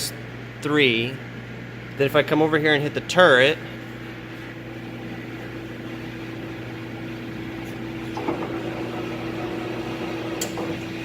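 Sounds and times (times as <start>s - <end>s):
machine tool humming: 4.0s - 11.0s.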